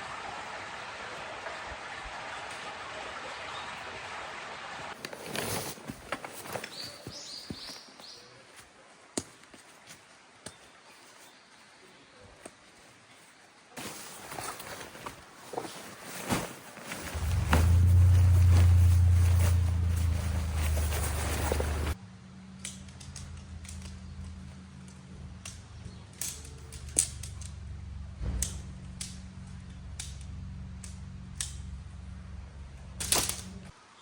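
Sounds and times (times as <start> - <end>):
footsteps on forest path: 5.0 - 22.0
bird chirping: 6.5 - 8.4
loud low drone: 17.1 - 22.2.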